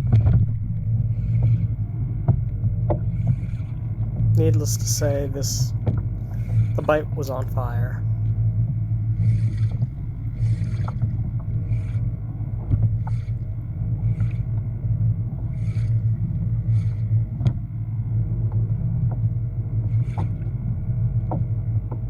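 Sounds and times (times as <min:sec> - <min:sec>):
small motor humming: 0:09.0 - 0:17.6.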